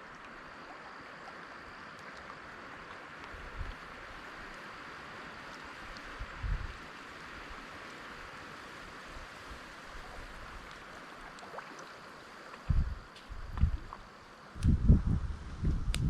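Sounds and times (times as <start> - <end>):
wind: 0.0 - 16.0
wind buffeting microphone: 6.2 - 6.8, 12.6 - 14.0, 14.6 - 16.0.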